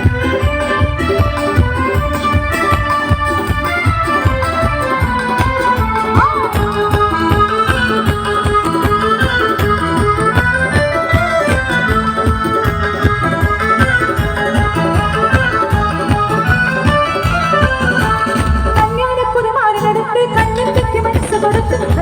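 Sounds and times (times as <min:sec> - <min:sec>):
organ-like keyboard melody: 0:00.0 - 0:19.1
steady drum beat: 0:00.0 - 0:19.2.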